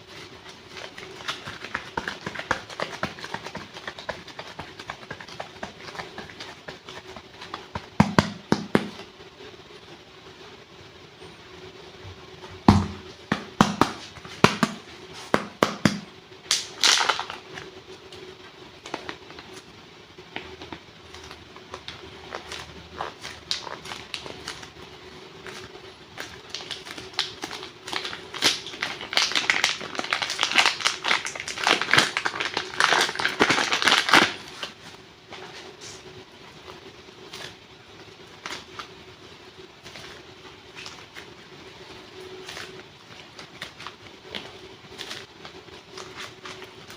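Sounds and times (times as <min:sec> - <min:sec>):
faint steady hum: 0:00.0 - 0:46.9
clay pack crinkling: 0:25.4 - 0:34.8.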